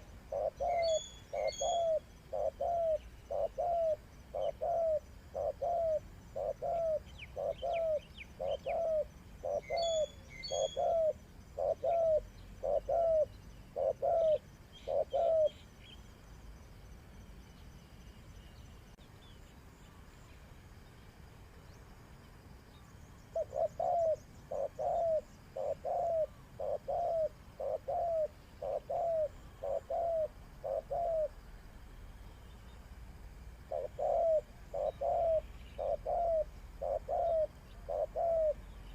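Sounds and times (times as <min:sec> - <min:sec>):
dove cooing: 0:00.0 - 0:15.6, 0:23.3 - 0:31.4, 0:33.6 - 0:38.6
small birds chirping: 0:00.0 - 0:33.0, 0:33.6 - 0:38.9.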